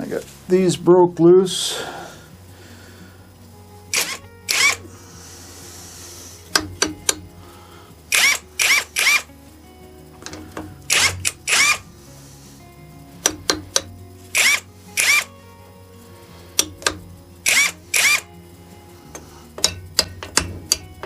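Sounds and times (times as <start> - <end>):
small power tool spinning: 3.9 - 4.9, 8.1 - 9.3, 10.9 - 11.9, 13.3 - 15.3, 16.6 - 18.3.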